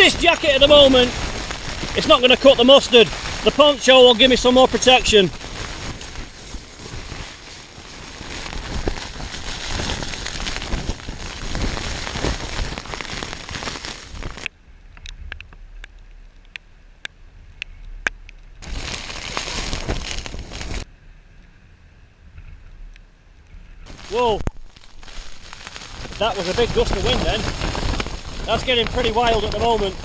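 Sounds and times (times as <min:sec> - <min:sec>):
sharp rain taps: 0:00.0 - 0:14.5, 0:18.0 - 0:20.9, 0:23.8 - 0:30.0
heavy rain and wind on fabric: 0:00.0 - 0:16.6, 0:18.5 - 0:20.9, 0:23.5 - 0:30.0.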